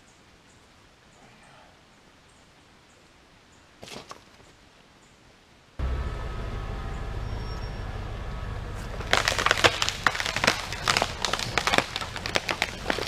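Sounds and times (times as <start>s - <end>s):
engine humming: 5.8s - 13.0s
tree trunk cracking and splintering: 8.8s - 13.0s.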